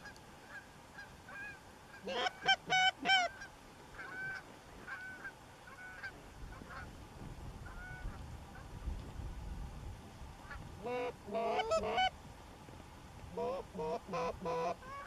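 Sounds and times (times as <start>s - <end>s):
geese honking: 0.0s - 6.9s, 7.6s - 8.7s, 10.4s - 12.2s, 13.3s - 15.0s.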